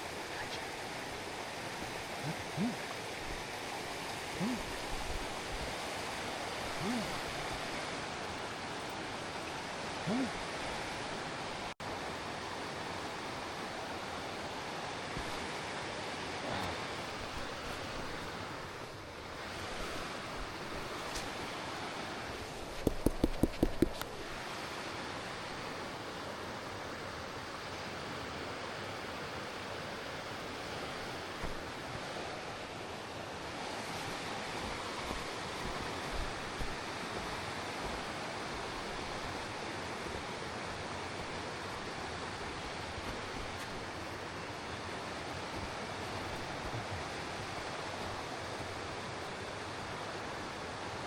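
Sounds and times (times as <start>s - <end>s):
fast-flowing water rushing: 0.0s - 51.0s
quick thumps: 22.8s - 24.0s.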